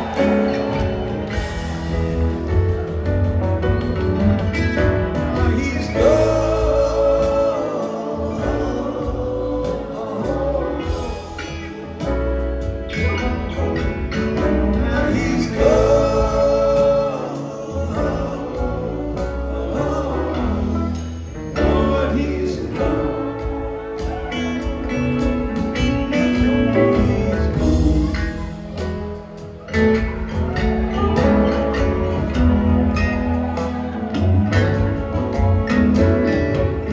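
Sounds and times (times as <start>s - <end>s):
live rock band: 0.0s - 36.9s
man singing: 4.1s - 28.8s.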